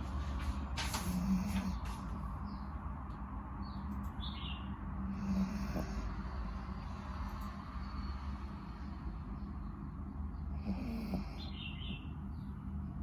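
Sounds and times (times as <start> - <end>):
dog snoring: 1.1 - 1.8, 5.1 - 6.3, 10.5 - 11.7.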